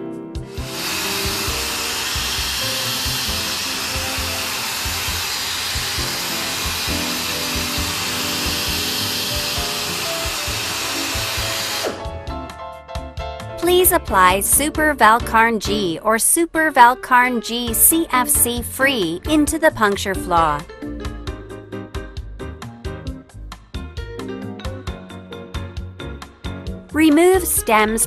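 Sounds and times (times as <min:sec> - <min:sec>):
pneumatic air drill running: 0:00.5 - 0:12.2.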